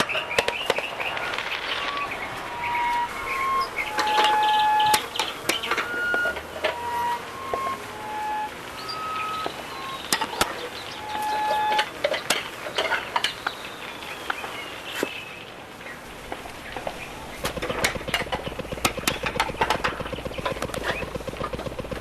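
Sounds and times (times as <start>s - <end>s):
thin whistle sliding downward: 0.4s - 11.9s
short electronic beeps: 1.2s - 11.9s
sharp clicks: 16.8s - 22.0s.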